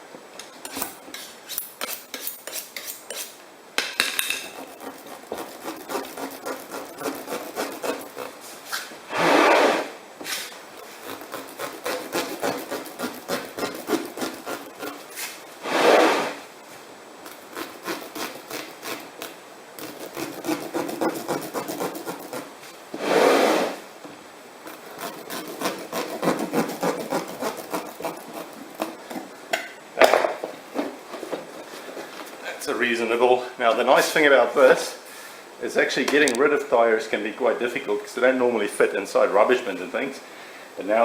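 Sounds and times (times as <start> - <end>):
knife sawing through rubber tyre: 4.4 - 8.5, 10.8 - 16.1, 17.3 - 22.5, 24.7 - 29.2.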